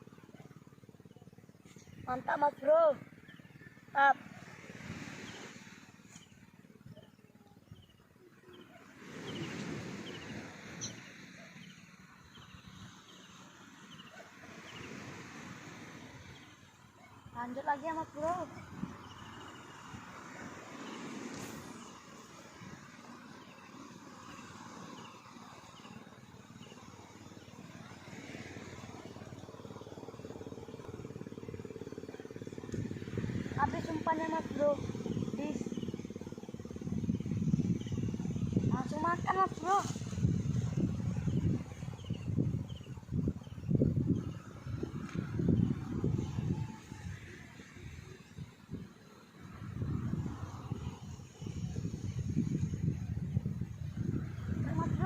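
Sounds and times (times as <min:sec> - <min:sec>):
engine running with pulsing beat: 0:26.1 - 0:41.9.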